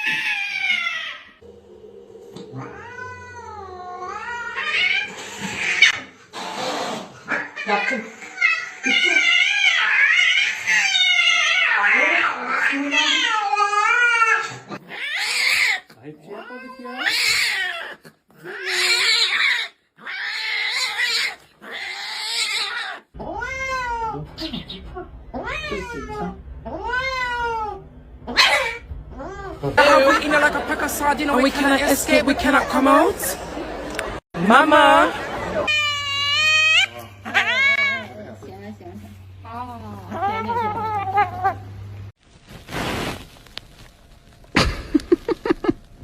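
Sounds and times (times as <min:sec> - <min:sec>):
cat yowling: 0:00.0 - 0:01.4, 0:07.3 - 0:15.9, 0:16.5 - 0:24.4, 0:25.3 - 0:29.6, 0:35.7 - 0:38.1.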